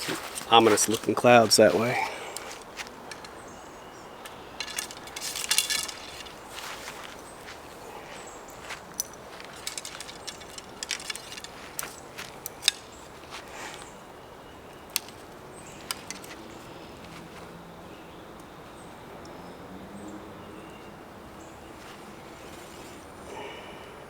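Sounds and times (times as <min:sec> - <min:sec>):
faint outdoor background: 0:00.0 - 0:24.0
light clicks and clinks: 0:02.3 - 0:14.0, 0:14.6 - 0:17.5.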